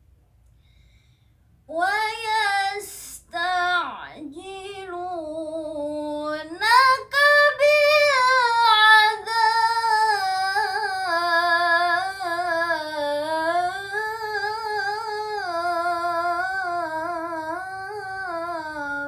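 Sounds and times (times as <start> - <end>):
girl reciting melodically: 1.7 - 19.0.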